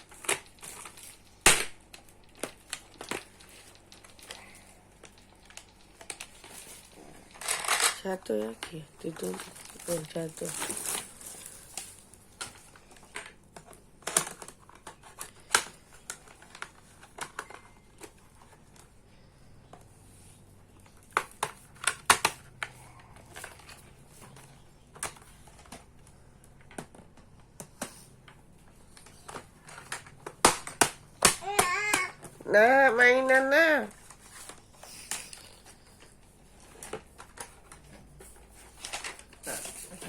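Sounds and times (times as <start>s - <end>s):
plastic parts clicking together: 11.8s - 18.9s, 20.8s - 32.4s.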